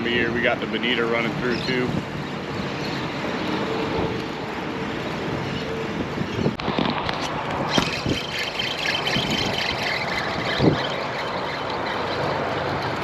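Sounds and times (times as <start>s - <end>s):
vehicle noise: 0.0s - 13.0s
wind: 0.0s - 13.0s
fast high clicking: 6.6s - 13.0s.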